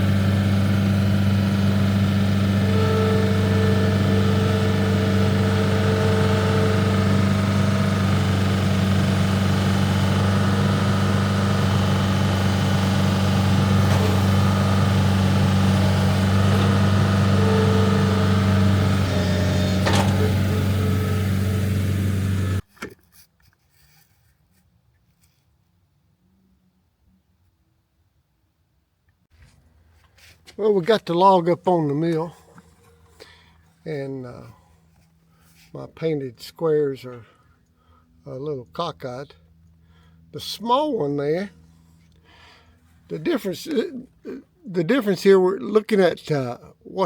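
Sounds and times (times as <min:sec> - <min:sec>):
engine idling: 0:00.0 - 0:22.6.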